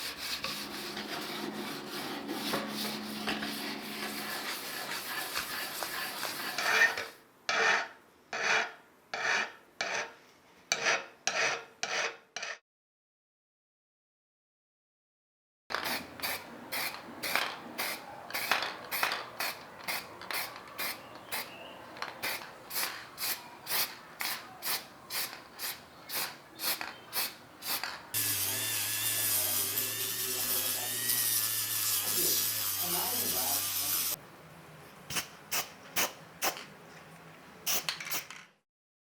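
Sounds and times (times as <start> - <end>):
hand rubbing strokes: 0.0 - 7.1
power tool humming: 28.2 - 34.2.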